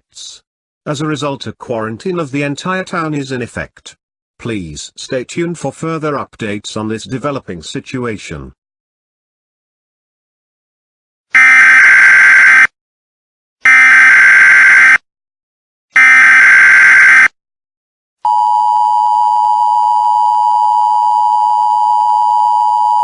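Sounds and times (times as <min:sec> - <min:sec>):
harsh digital data bursts: 0:16.0 - 0:17.3.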